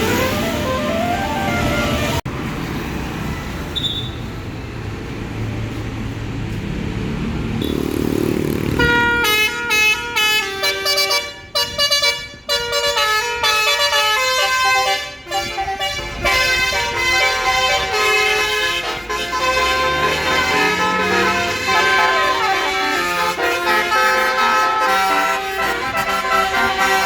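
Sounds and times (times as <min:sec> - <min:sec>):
musical bus horn melody: 0:00.0 - 0:02.3, 0:08.8 - 0:27.0
traffic: 0:00.0 - 0:27.0
bus engine running: 0:04.4 - 0:11.8, 0:12.4 - 0:27.0.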